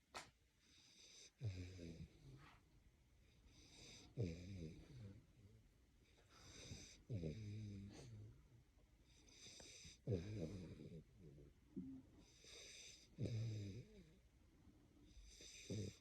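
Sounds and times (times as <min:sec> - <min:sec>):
boy snoring: 0:15.4 - 0:16.0.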